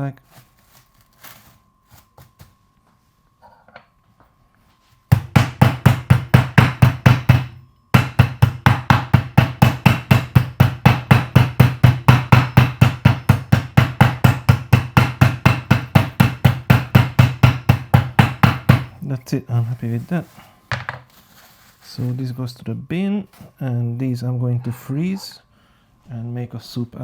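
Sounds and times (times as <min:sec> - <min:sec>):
meat tenderizer pounding meat: 0:05.1 - 0:19.0.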